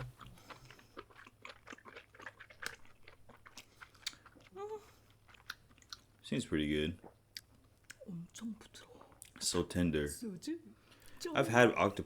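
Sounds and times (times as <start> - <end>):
wet chewing clicks and smacks: 0.0 - 6.2, 7.0 - 8.1.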